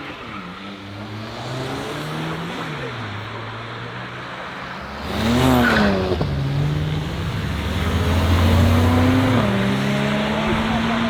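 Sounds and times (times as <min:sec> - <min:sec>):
car engine revving: 0:04.7 - 0:11.0.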